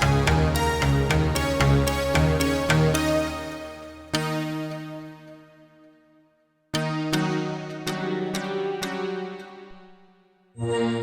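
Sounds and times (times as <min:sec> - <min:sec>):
synthesizer notes: 0:10.6 - 0:11.0.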